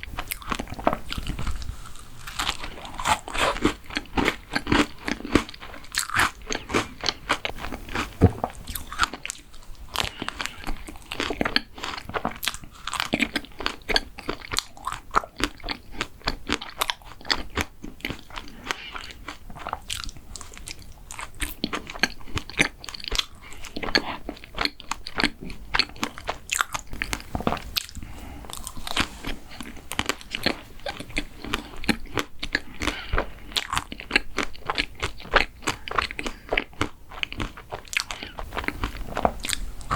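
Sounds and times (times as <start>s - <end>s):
chewing: 0.0s - 39.9s
crisp crunching bites: 0.1s - 20.0s.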